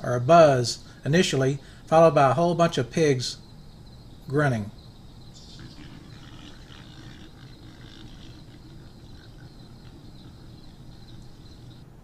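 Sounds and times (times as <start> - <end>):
night insects: 0.0 - 12.0
hogs grunting faintly: 4.6 - 11.9.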